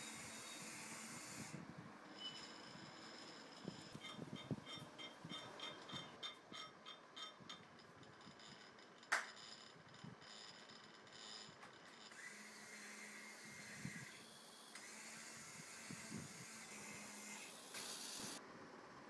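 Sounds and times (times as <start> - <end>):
small electric motor whine: 0.0 - 4.1, 8.2 - 18.4.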